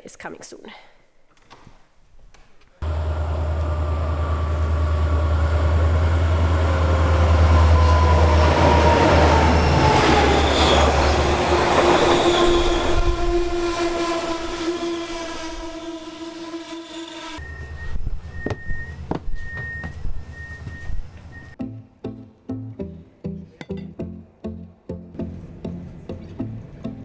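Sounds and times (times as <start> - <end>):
train rumbling and whining: 2.8 - 21.6
train steady squeal: 2.8 - 21.6.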